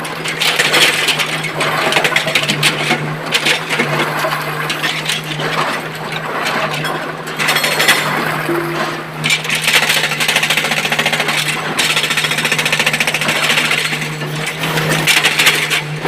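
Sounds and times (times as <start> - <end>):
diesel engine drone: 7.9 - 11.8.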